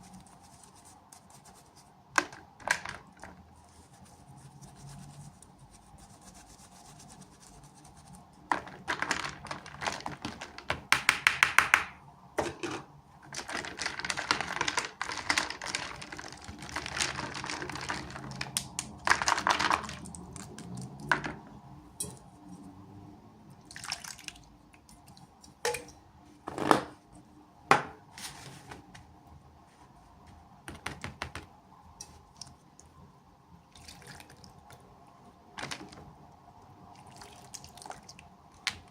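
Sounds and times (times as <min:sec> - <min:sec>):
toy packaging rustling: 0:13.3 - 0:20.1.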